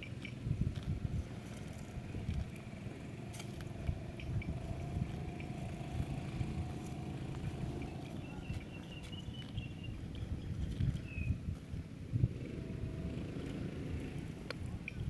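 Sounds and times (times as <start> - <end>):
cow tearing and chewing grass: 0.0 - 11.0.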